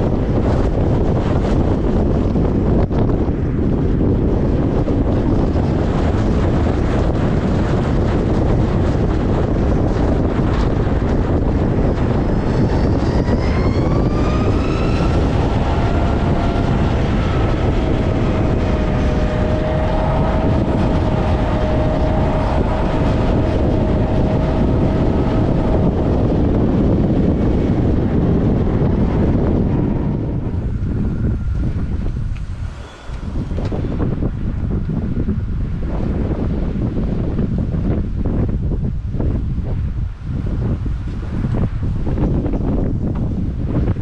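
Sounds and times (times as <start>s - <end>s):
wind noise on microphone: 0.0s - 44.0s
electric motor whine: 11.2s - 35.4s.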